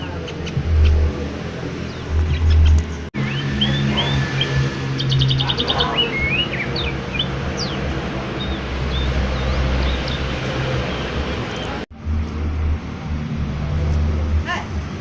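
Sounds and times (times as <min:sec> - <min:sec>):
bird whistling and chirping: 0:02.4 - 0:07.8.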